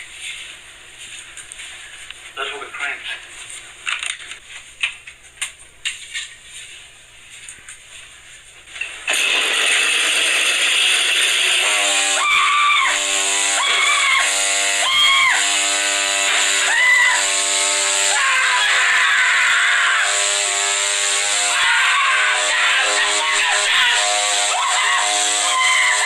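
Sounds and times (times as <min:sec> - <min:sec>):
chainsaw engine revving: 0:09.1 - 0:26.0.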